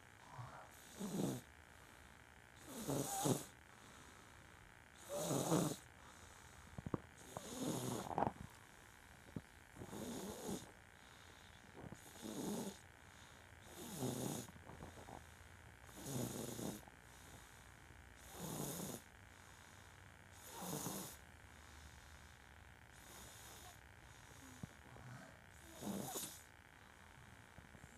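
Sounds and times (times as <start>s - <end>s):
quiet breathing: 0.0s - 27.9s
loud snoring: 0.2s - 1.5s, 2.6s - 3.6s, 5.0s - 5.9s, 7.2s - 8.4s, 9.8s - 10.8s, 11.8s - 12.8s, 13.6s - 14.6s, 15.8s - 16.9s, 18.2s - 19.1s, 20.4s - 21.2s, 22.9s - 26.5s.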